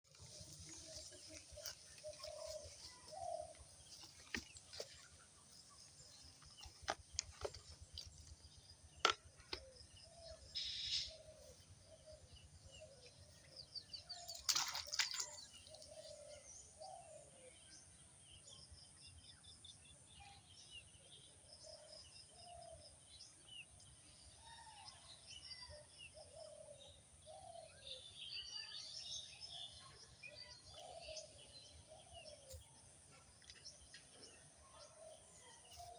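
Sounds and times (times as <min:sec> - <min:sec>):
birds chirping and calling: 0:00.1 - 0:17.9, 0:21.5 - 0:35.9.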